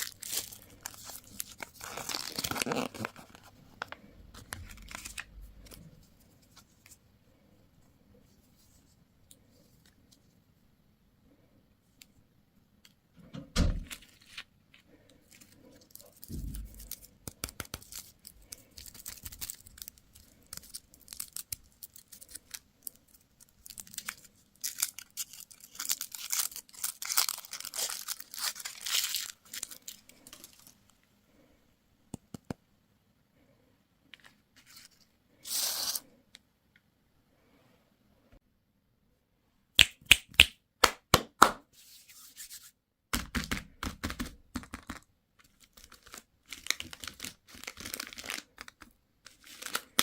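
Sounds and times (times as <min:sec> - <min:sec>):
candy wrapper crinkling: 0:00.0 - 0:05.8, 0:15.3 - 0:30.9, 0:43.6 - 0:50.0.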